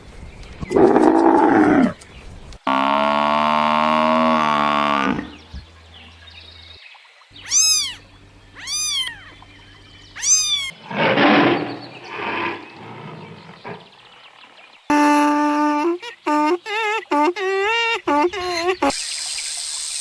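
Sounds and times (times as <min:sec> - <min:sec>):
cat meowing: 0:07.4 - 0:08.0, 0:08.6 - 0:09.2, 0:10.2 - 0:10.7
rough noisy sounds: 0:10.7 - 0:14.2, 0:14.9 - 0:19.0.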